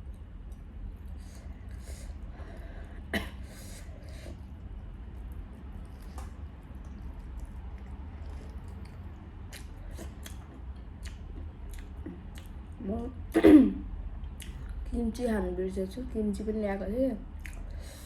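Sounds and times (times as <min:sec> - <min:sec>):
wet mouth clicks and chewing: 0:05.1 - 0:12.8, 0:14.2 - 0:14.8, 0:17.3 - 0:17.8.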